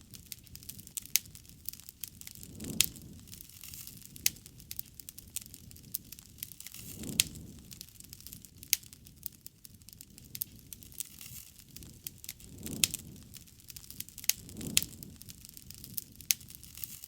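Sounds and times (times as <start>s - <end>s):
low rushing of burning: 0.0s - 17.0s
wood fire crackling and popping: 0.0s - 17.0s.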